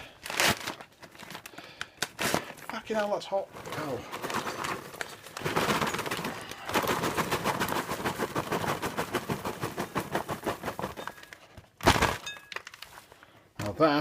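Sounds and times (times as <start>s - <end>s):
popcorn rattling into a bowl: 3.6s - 12.8s.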